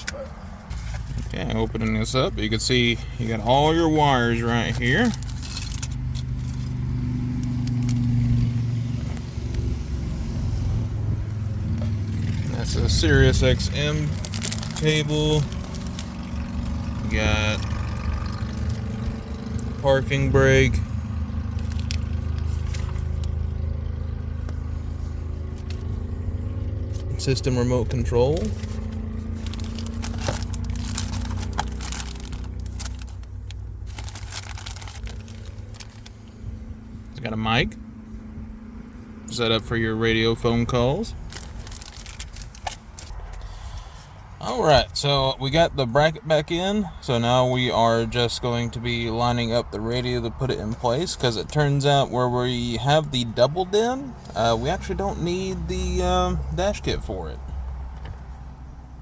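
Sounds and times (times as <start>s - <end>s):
car engine idling: 0.0s - 59.0s
faint clicks and rustles: 14.1s - 19.7s, 27.9s - 36.6s, 41.3s - 44.3s.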